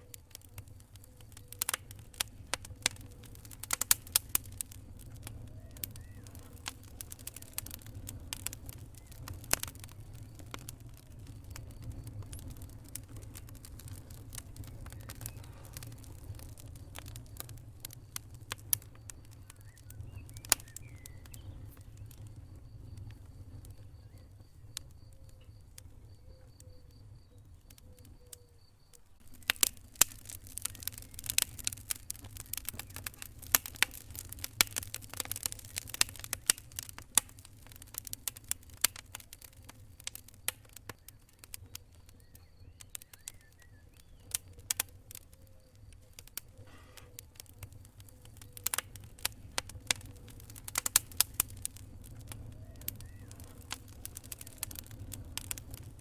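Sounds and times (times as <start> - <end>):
wood fire crackling: 0.0 - 56.0.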